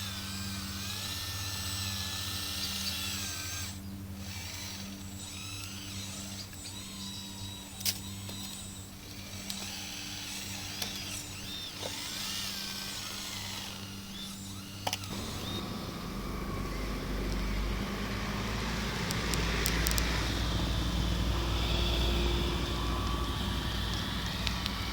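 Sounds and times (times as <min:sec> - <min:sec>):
small motor whines: 0:00.0 - 0:24.9
steady electric hum: 0:00.0 - 0:24.9
low rumbling: 0:15.1 - 0:24.9
sharp clicks: 0:19.0 - 0:20.3, 0:23.9 - 0:24.9.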